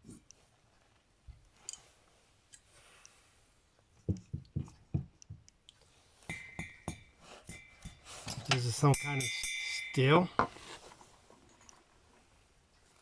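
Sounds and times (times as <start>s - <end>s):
faint clicks of parts: 0.1s - 4.0s.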